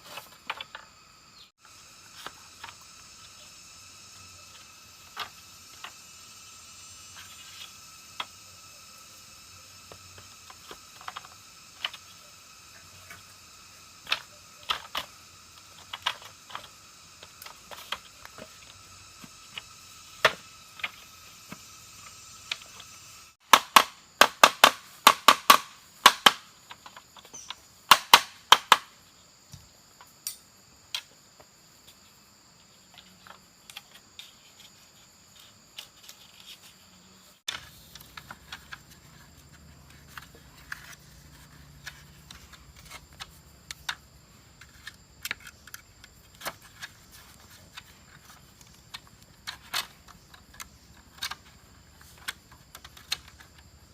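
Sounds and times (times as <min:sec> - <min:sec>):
high insect drone: 0:00.0 - 0:53.9
bamboo knocking and clicking: 0:14.0 - 0:28.9, 0:37.5 - 0:53.7.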